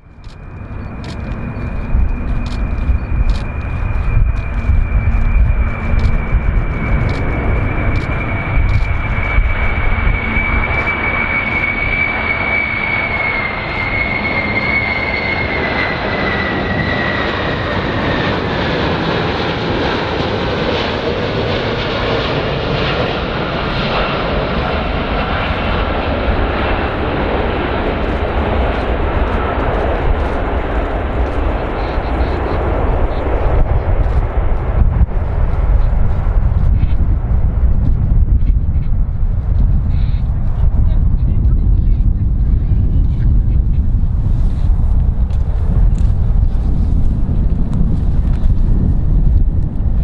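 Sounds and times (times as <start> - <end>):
engine whine gliding down: 0.0 - 35.6
airplane engines rumbling: 0.0 - 50.0.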